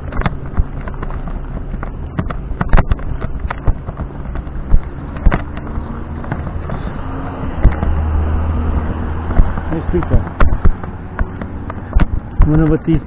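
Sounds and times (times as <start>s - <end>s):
sharp knocks and bangs: 7.5s - 12.8s.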